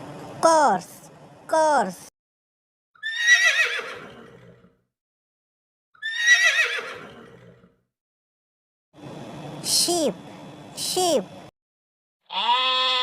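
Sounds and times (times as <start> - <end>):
horse neighing: 3.0 - 4.8, 6.0 - 7.8, 12.3 - 13.0.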